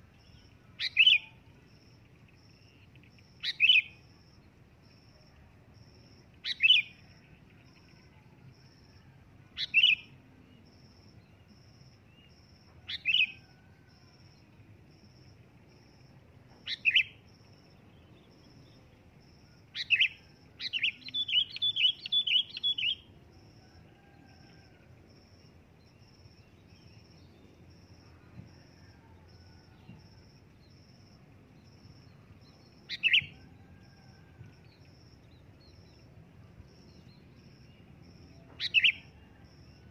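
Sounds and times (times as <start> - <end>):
bulbul calling: 0.8 - 1.4, 2.7 - 4.0, 19.8 - 23.0, 38.6 - 39.0.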